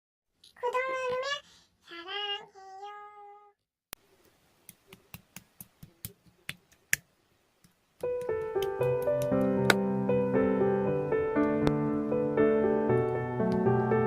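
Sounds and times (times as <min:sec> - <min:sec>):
piano music: 0:08.0 - 0:14.0.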